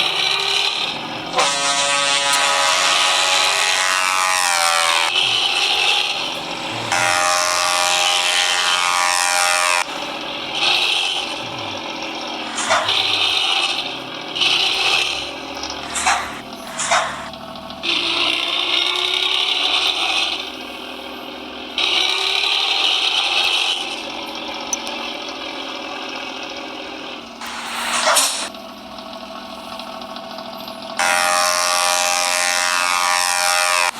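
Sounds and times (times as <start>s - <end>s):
diesel truck engine under throttle: 0.0s - 33.9s
steady horn blast: 6.8s - 10.0s, 15.8s - 17.3s.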